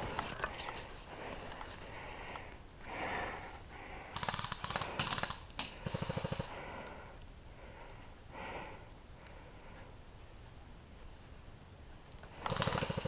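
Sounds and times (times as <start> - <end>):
airsoft gun full-auto bursts: 4.1 - 6.5, 12.4 - 13.0.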